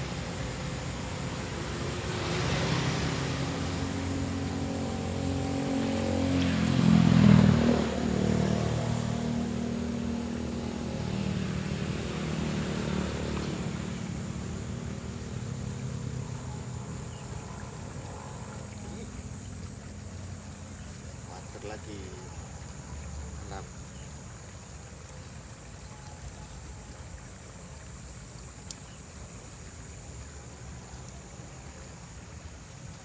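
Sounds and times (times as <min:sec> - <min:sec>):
vehicle engine passing by: 0:00.0 - 0:24.5.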